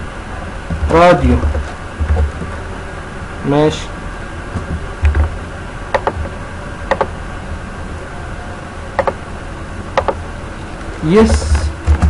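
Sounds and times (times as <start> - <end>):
low hum: 0.0 - 12.0
microphone hiss: 0.0 - 12.0
computer mouse clicks: 5.9 - 6.3, 6.9 - 7.1, 9.0 - 9.2, 10.0 - 10.2.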